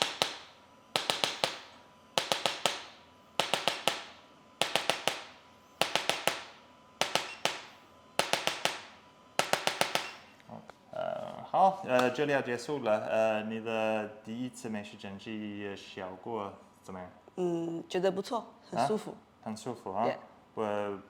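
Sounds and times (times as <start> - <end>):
sharp cracking pops: 0.0 - 10.4.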